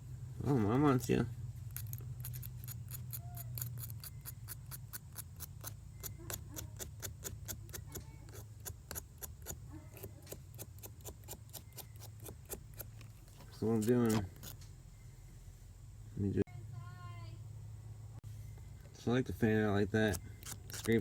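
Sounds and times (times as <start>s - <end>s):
steady low hum: 0.0s - 21.0s
razor blade scraping wire: 1.7s - 14.7s, 20.0s - 21.0s.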